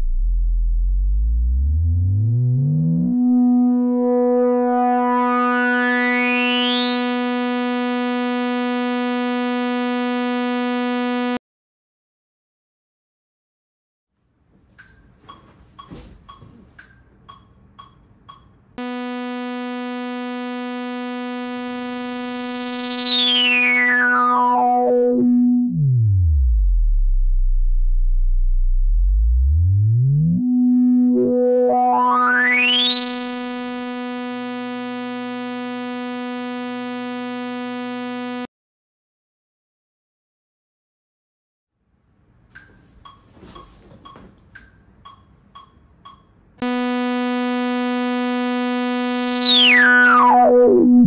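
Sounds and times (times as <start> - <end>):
synthesizer resonant filter sweep: 46.6 - 51.0.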